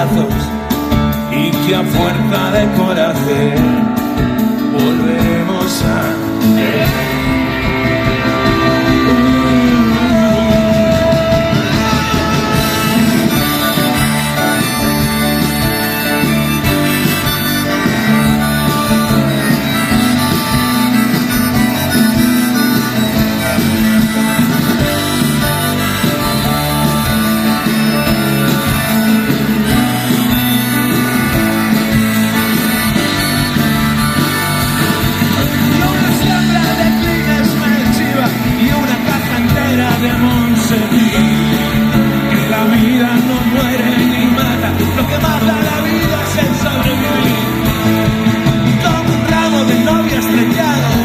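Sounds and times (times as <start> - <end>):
electric guitar: 0.0 - 51.0
rock band playing live: 0.0 - 51.0.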